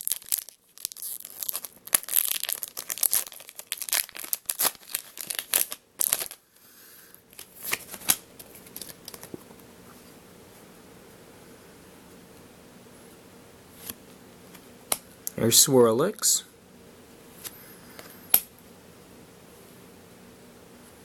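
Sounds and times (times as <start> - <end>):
foil wrapper tearing and crinkling: 0.0 - 6.4, 7.3 - 9.4.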